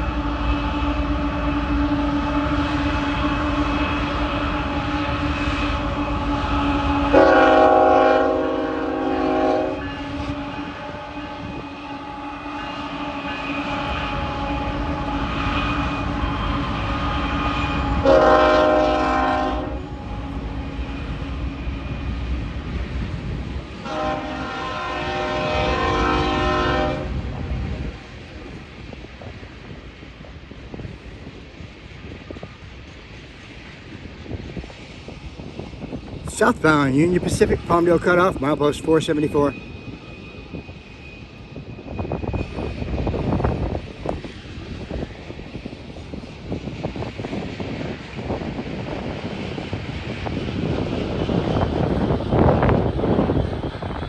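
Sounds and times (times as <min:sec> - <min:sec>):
train air horn blasts: 0:00.0 - 0:21.0, 0:23.8 - 0:27.3
diesel locomotive rumbling: 0:00.0 - 0:54.0.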